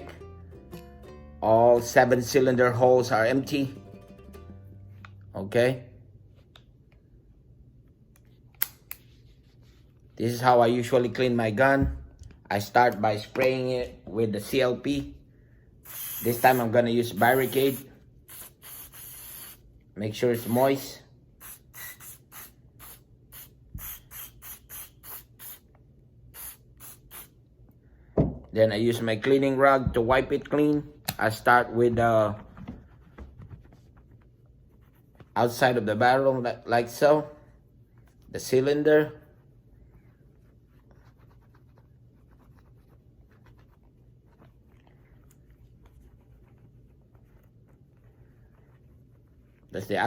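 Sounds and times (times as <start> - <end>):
spray bottle spritzes: 15.9 - 19.6, 21.4 - 25.6, 26.4 - 27.3.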